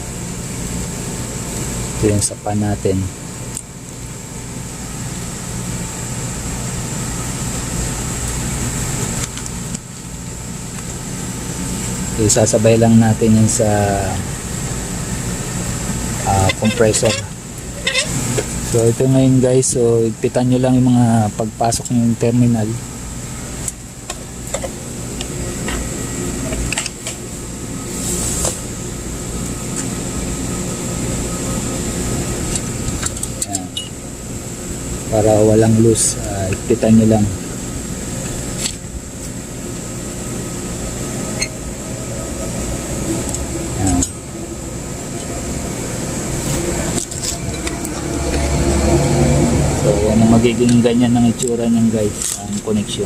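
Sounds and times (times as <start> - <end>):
motor humming and whirring: 22.8 - 53.0.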